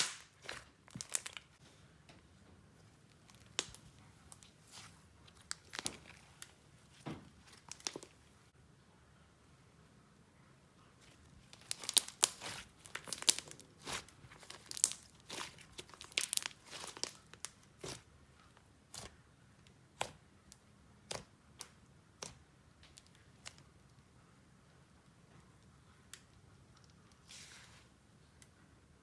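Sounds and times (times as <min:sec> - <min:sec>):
slime crackling and popping: 0:00.0 - 0:01.6, 0:03.2 - 0:06.5, 0:07.4 - 0:08.1, 0:11.4 - 0:18.1, 0:18.8 - 0:19.2.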